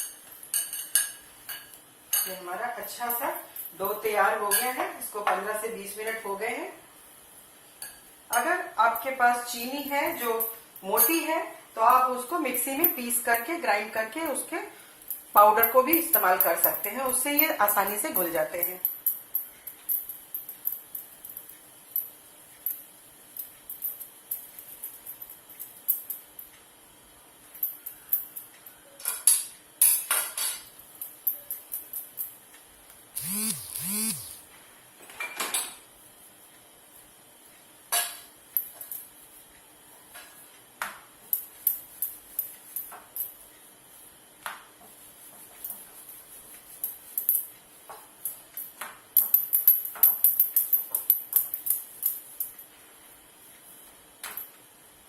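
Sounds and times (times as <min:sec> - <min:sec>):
kitchen utensils clinking: 0:00.0 - 0:02.4
faint steady hum: 0:00.0 - 0:55.0.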